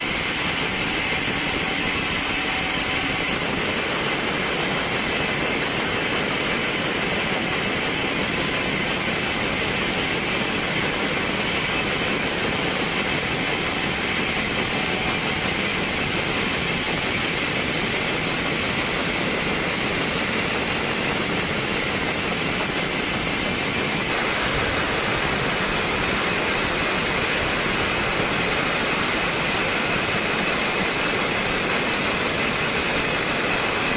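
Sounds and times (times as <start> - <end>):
sawmill machinery whining: 0.0 - 33.9.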